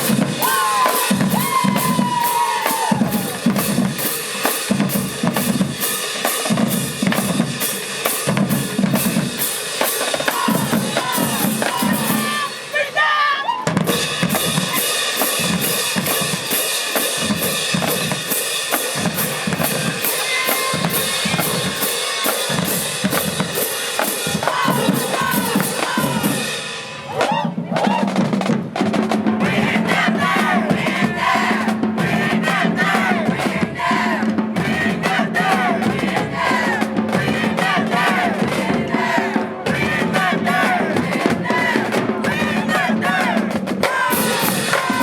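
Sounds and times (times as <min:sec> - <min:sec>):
voices shouting: 0:00.0 - 0:03.7, 0:10.0 - 0:13.9, 0:19.1 - 0:22.8, 0:24.0 - 0:26.4, 0:34.8 - 0:45.0
marching drumline cadence: 0:00.0 - 0:45.0.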